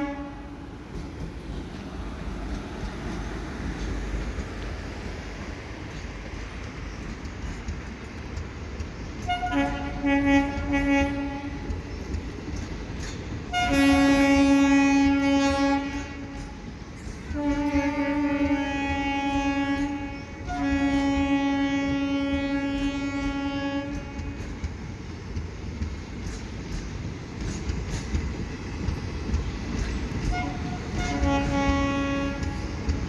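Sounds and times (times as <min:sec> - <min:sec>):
train horn blasts: 0:00.0 - 0:00.6, 0:09.2 - 0:11.9, 0:13.5 - 0:16.7, 0:17.3 - 0:24.7, 0:30.2 - 0:33.0
moving train rumble: 0:00.0 - 0:33.0.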